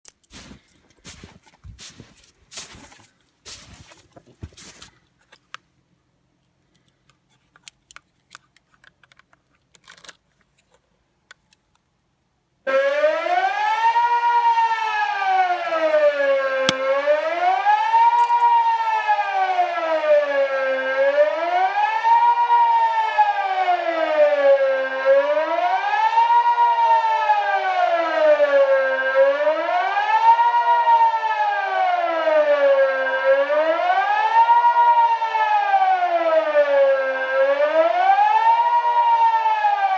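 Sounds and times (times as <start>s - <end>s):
civil defence siren wailing: 12.7s - 39.9s.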